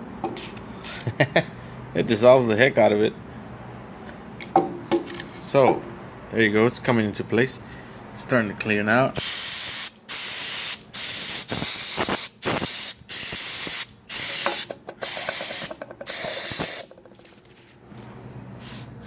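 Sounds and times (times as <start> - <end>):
aerosol can spraying bursts: 9.2 - 16.9.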